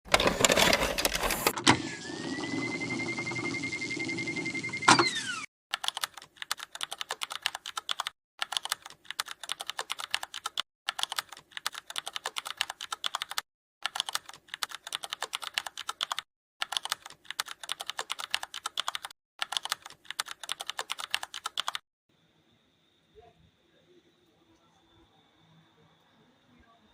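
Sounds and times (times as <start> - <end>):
rapid typing on keyboard: 5.7 - 21.8.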